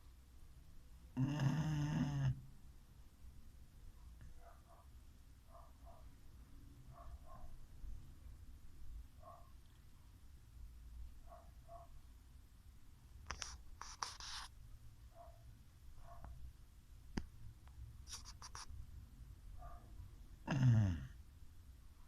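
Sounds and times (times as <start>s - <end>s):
dog breathing with faint snores: 1.2s - 2.4s
scratchy rustling: 13.3s - 14.6s, 18.1s - 18.7s.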